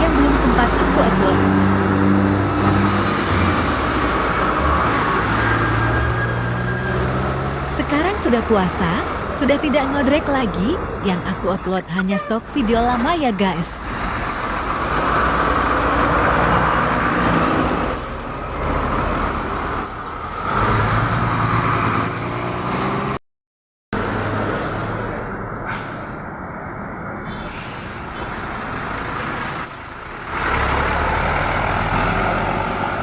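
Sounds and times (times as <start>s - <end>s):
multi-tone bus horns: 0.0s - 14.5s
buses passing with engines running: 0.0s - 23.2s, 24.0s - 33.0s.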